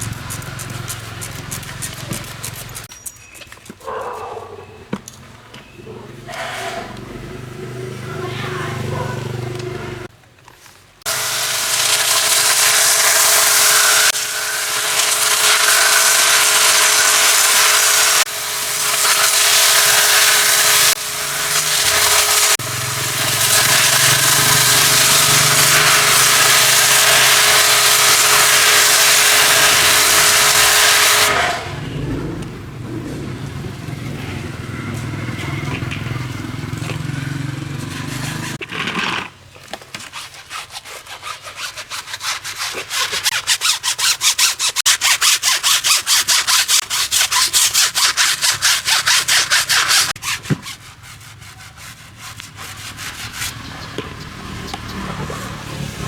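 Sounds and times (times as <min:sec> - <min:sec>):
washer motor drone: 0:00.0 - 0:02.9, 0:06.1 - 0:10.1, 0:11.1 - 0:38.6, 0:44.7 - 0:50.2, 0:52.0 - 0:56.0
pressure washer water jet hiss: 0:11.1 - 0:31.6.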